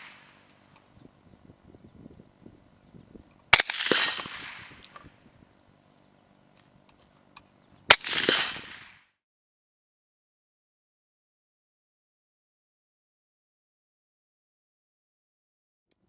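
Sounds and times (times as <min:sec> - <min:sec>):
rifle shots with echo: 0:00.0 - 0:00.4, 0:03.5 - 0:05.1, 0:07.9 - 0:09.1.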